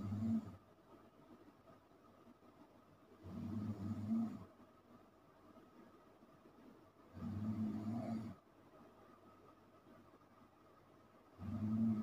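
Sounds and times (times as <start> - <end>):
dog snoring: 0.0 - 0.6, 3.2 - 4.5, 7.1 - 8.4, 11.4 - 12.0.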